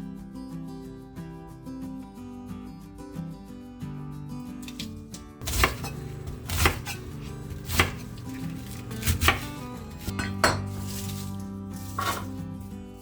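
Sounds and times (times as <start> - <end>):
soft background music: 0.0 - 13.0
knife chopping on cutting board: 4.6 - 12.4.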